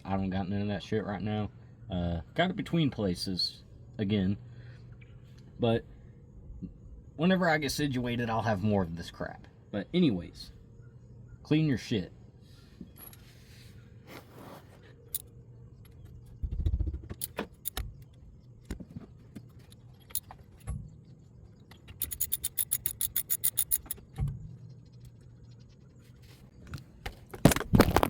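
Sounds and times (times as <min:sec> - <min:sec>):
metal tools clinking: 0:21.9 - 0:24.0
ratchet wrench clicking: 0:22.0 - 0:24.0.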